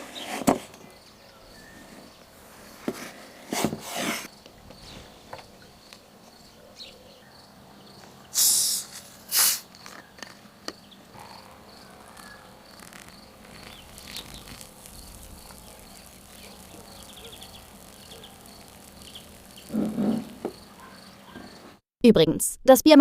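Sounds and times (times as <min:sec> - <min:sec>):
crickets chirping: 0:04.2 - 0:21.8
short loud hissing bursts: 0:08.3 - 0:09.8, 0:11.3 - 0:21.2.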